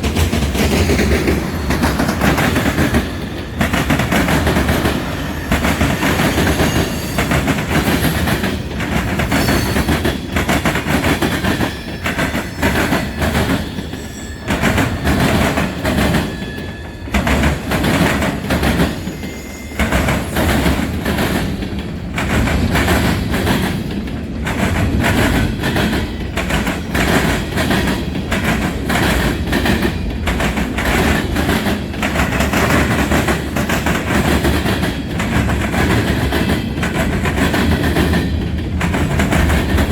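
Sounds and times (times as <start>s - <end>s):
train wheels clattering over rail joints: 0.0s - 39.9s
train wheels squealing: 0.6s - 21.7s.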